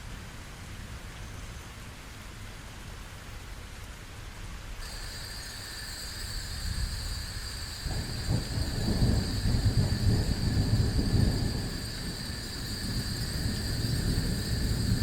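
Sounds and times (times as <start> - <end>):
steady rain: 0.0 - 15.0
thunder rumbling: 7.7 - 15.0.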